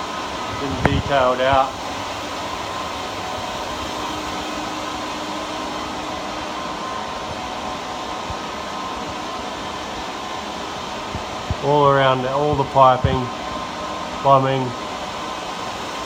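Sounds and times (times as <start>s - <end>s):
cooling fans whirring: 0.0s - 16.0s.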